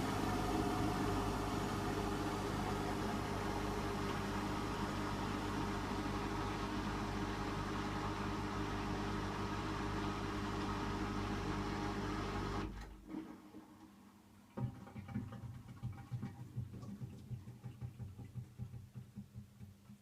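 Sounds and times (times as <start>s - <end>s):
washing machine spin hum: 0.0s - 13.1s, 14.4s - 20.0s
washing machine knocking: 14.6s - 20.0s.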